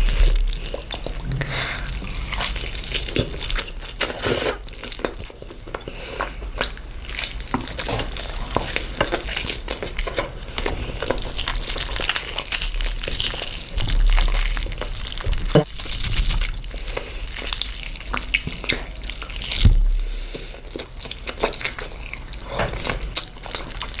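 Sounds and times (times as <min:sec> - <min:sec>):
wet chewing: 0:00.0 - 0:24.0
dull low thump: 0:19.6 - 0:20.1.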